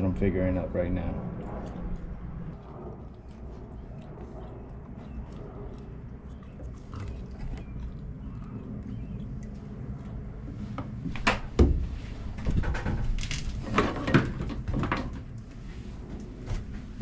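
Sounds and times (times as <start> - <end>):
low steady rumble: 0.0 - 17.0.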